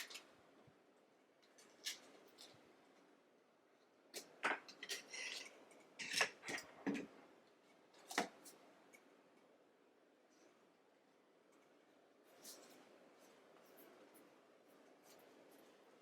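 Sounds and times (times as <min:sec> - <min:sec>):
rustling: 0:11.5 - 0:16.0.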